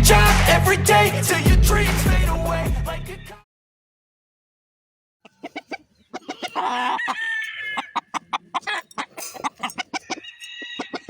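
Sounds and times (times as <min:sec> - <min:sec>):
chickens clucking: 0:05.2 - 0:11.0
rooster crowing: 0:06.2 - 0:09.0, 0:09.6 - 0:11.0.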